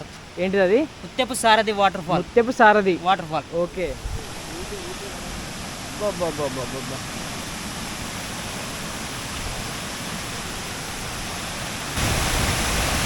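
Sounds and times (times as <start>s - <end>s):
waterfall roaring: 0.0s - 13.0s.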